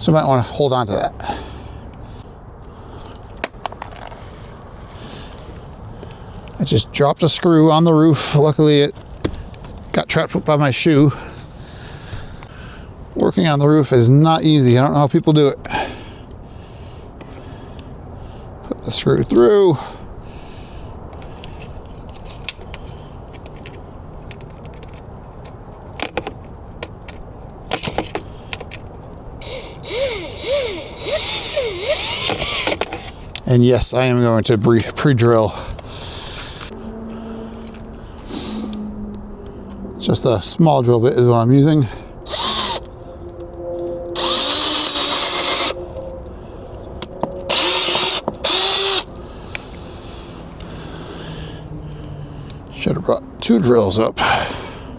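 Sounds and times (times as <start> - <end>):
cordless drill motor whine: 29.4 - 32.8, 42.2 - 42.9, 44.1 - 46.0, 47.5 - 49.1.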